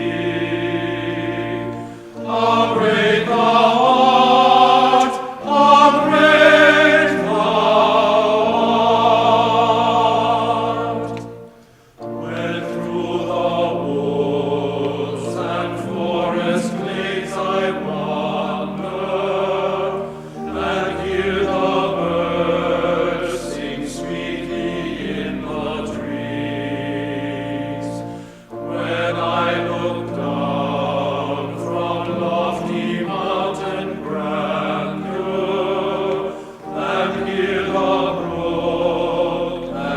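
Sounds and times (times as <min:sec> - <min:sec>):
choir singing sustained notes: 0:00.0 - 0:39.9.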